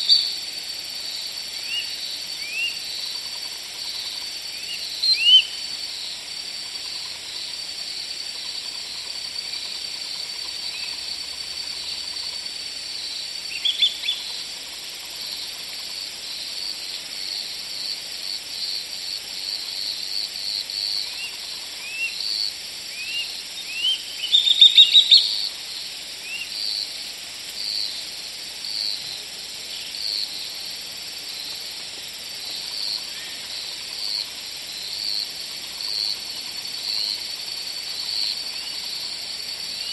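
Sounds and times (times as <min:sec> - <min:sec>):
insects chirping: 0:00.0 - 0:39.9
upward-sweeping bird calls: 0:23.1 - 0:25.4.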